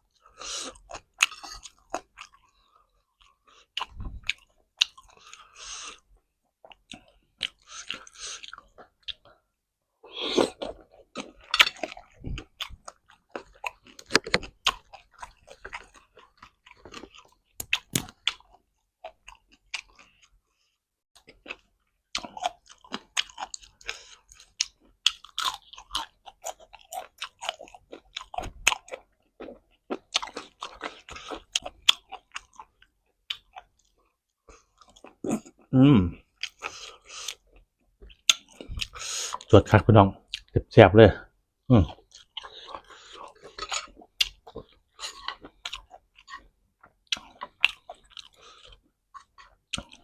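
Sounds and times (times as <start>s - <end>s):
crunchy chewing of vegetables: 10.1s - 20.4s, 21.2s - 39.5s, 41.8s - 50.0s
person humming: 35.8s - 36.2s.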